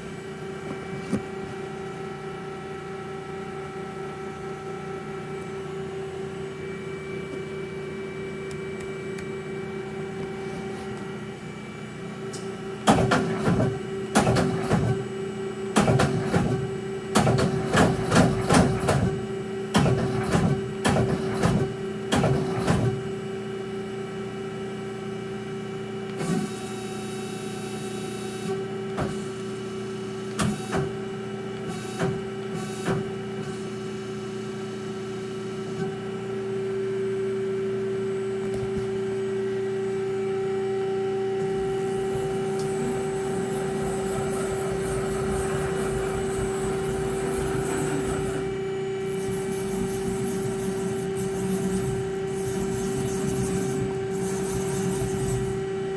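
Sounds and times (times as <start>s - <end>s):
lathe motor hum: 33.1s - 55.9s.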